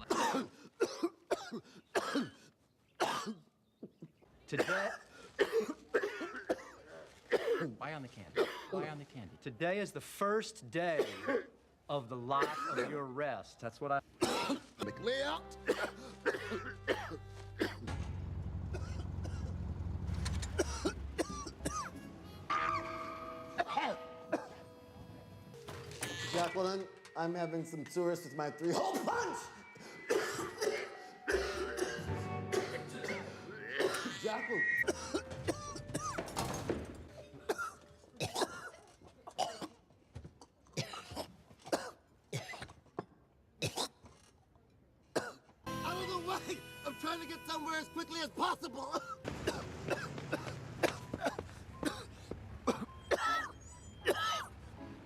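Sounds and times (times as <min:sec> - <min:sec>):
man coughing: 0:00.0 - 0:02.4, 0:03.0 - 0:07.8, 0:08.4 - 0:08.9, 0:11.0 - 0:11.6, 0:12.4 - 0:13.1, 0:14.2 - 0:14.8, 0:15.6 - 0:17.9, 0:18.7 - 0:19.5, 0:20.6 - 0:21.9, 0:23.6 - 0:24.6, 0:28.6 - 0:36.2, 0:37.5 - 0:39.8, 0:40.8 - 0:42.7, 0:45.2 - 0:45.4, 0:48.7 - 0:52.1, 0:52.7 - 0:54.4.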